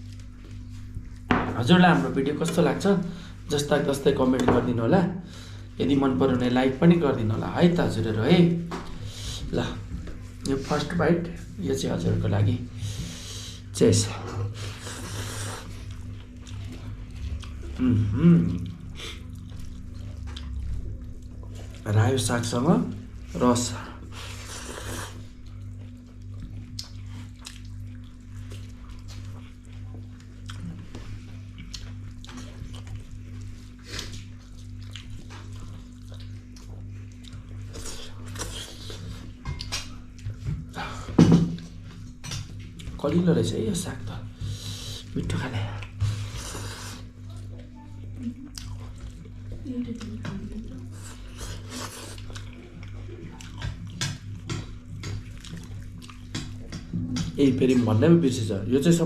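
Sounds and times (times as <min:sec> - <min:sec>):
steady low hum: 0:00.0 - 0:59.0
person slurping and chewing: 0:12.8 - 0:21.9, 0:23.2 - 0:39.4, 0:44.3 - 0:47.3, 0:50.8 - 0:57.0.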